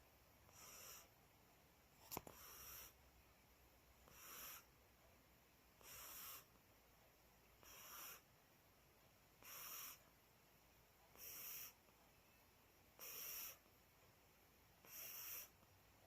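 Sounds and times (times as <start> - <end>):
cat snoring softly: 0.5 - 1.2, 2.3 - 3.0, 4.0 - 4.8, 5.8 - 6.5, 7.6 - 8.3, 9.4 - 10.1, 11.1 - 11.9, 12.9 - 13.8, 14.8 - 15.8.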